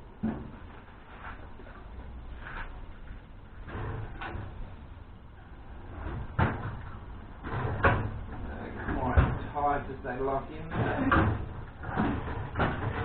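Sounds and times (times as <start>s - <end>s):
metal clunks and knocks: 6.0s - 9.6s, 10.6s - 13.0s.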